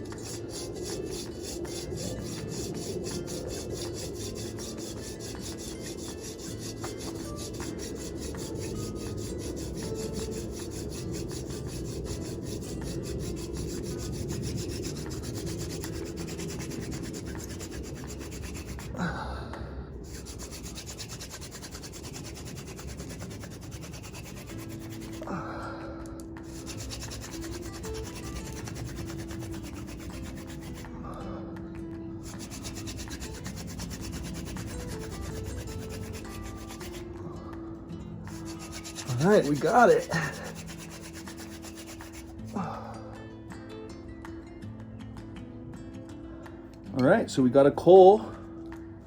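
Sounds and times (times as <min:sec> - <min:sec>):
hand drill grinding rasp: 0:00.0 - 0:19.0, 0:20.0 - 0:25.4, 0:26.4 - 0:31.0, 0:32.2 - 0:37.2, 0:38.2 - 0:42.8.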